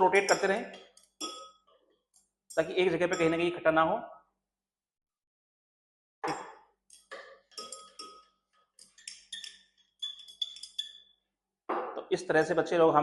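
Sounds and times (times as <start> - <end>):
stirring rod clinking on glass: 0.0 - 3.4, 6.3 - 11.2.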